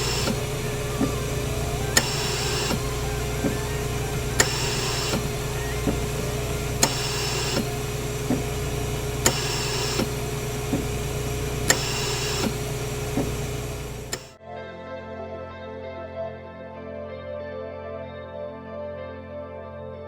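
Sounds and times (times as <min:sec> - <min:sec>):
sharp clicks: 0:00.0 - 0:14.4
small electric motor humming: 0:00.0 - 0:14.4.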